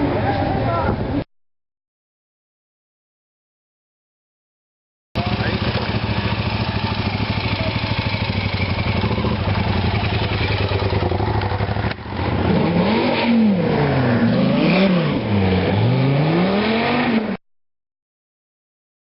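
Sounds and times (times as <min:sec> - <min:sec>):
sports car engine revving: 0:08.2 - 0:17.4.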